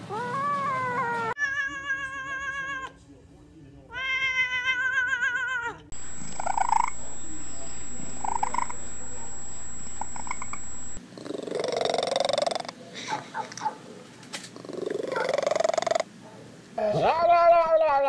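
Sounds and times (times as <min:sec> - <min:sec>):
cats chirping: 0:03.9 - 0:12.7
steady low hum: 0:05.9 - 0:11.2.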